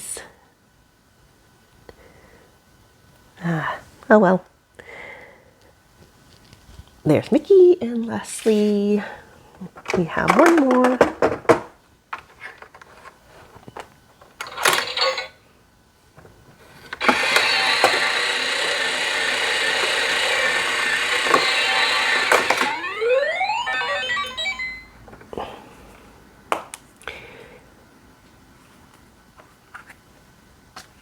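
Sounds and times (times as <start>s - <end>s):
toy clicks and rattles: 17.0s - 24.8s
electronic toy jingle: 17.4s - 25.0s.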